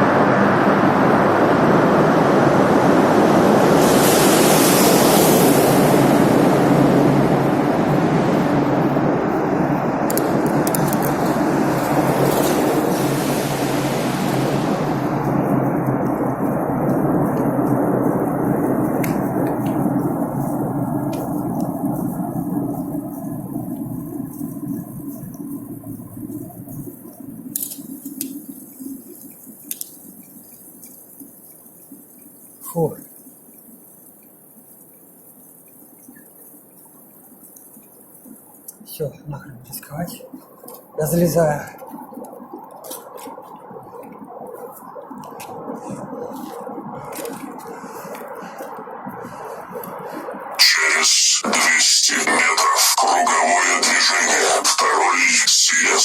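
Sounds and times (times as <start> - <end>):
vehicles passing in tunnel: 0.0 - 28.6, 41.7 - 56.0
wind on microphone: 0.0 - 32.4, 40.2 - 50.7
light ticks: 21.1 - 32.5.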